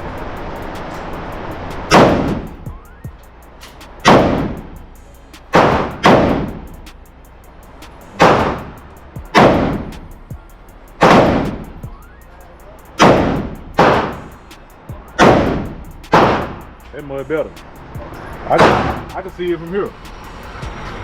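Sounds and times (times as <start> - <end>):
rifle shots with echo: 9.4 - 9.9, 11.0 - 11.6, 13.0 - 14.2, 15.2 - 16.6.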